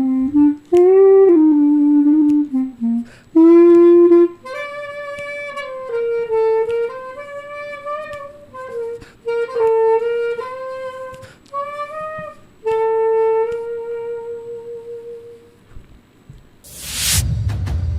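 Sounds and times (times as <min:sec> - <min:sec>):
clarinet playing slow melody: 0:00.0 - 0:15.7.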